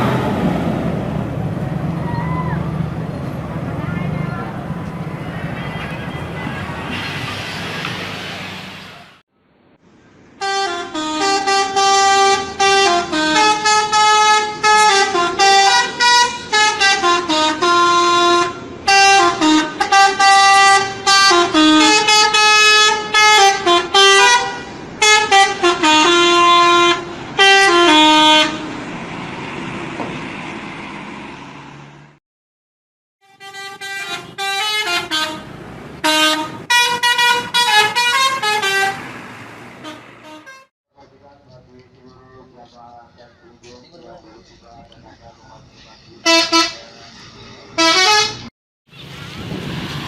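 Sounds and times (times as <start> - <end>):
multi-tone air horn tune: 10.4 - 28.7, 33.2 - 39.0, 39.8 - 40.7, 46.2 - 46.9, 47.8 - 48.5.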